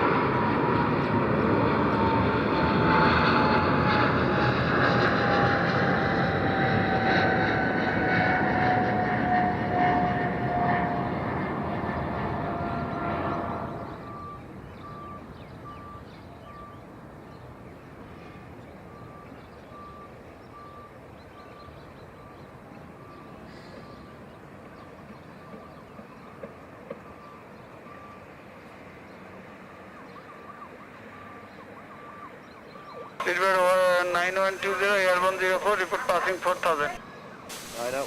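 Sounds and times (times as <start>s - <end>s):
jet engines at takeoff power: 0.0s - 38.0s
faint steady hiss: 33.2s - 38.0s.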